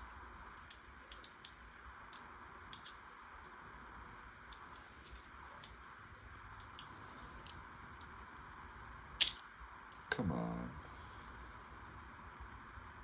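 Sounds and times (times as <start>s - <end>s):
plastic parts clicking: 0.6s - 3.0s, 9.2s - 9.4s.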